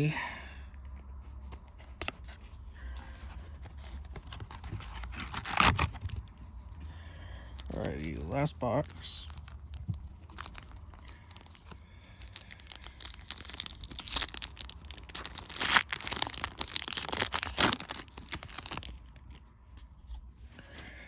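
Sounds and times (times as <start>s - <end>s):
card packaging crinkling: 3.5s - 6.4s, 7.4s - 19.9s
sharp paper rips: 5.0s - 6.1s, 12.2s - 19.1s.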